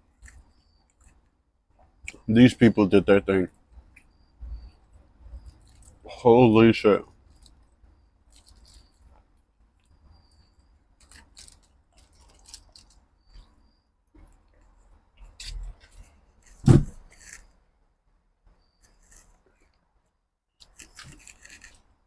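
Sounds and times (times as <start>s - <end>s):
clicks and crinkles of eating: 0.0s - 2.3s, 3.8s - 6.2s, 7.0s - 13.6s, 20.6s - 22.0s
loud thump: 16.6s - 17.0s.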